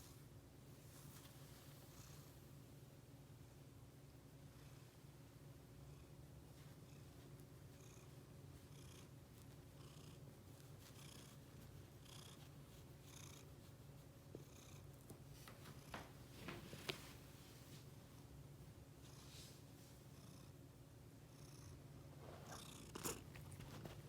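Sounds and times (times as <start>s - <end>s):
cat purring: 5.8s - 16.0s, 21.3s - 24.0s.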